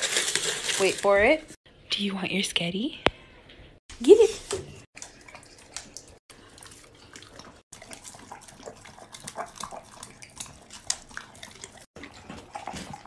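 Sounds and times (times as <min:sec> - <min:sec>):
dogs chewing and slurping: 0:04.9 - 0:13.0.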